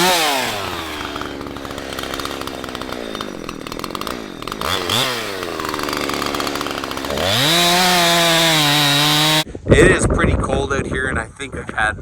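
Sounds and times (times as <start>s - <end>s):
chainsaw idling and revving: 0.0s - 9.4s.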